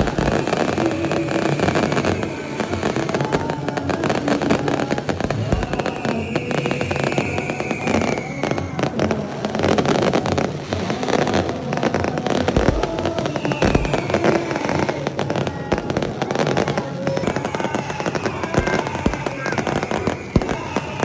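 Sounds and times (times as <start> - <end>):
fireworks cracking and banging: 0.0 - 21.0
whistling firework shells: 5.1 - 9.0, 17.2 - 21.0.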